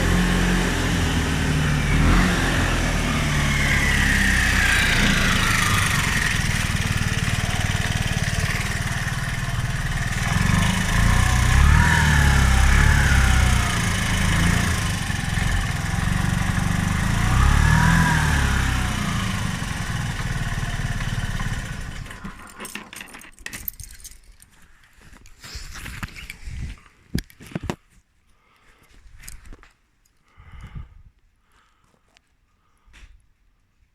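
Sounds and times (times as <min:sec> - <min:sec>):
scooter engine idling and revving: 0:00.0 - 0:22.6.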